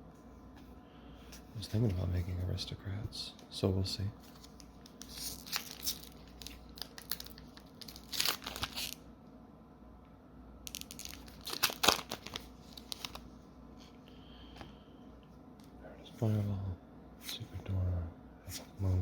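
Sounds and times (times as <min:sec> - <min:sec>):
foil wrapper tearing and crinkling: 0:04.8 - 0:09.0, 0:10.7 - 0:13.2.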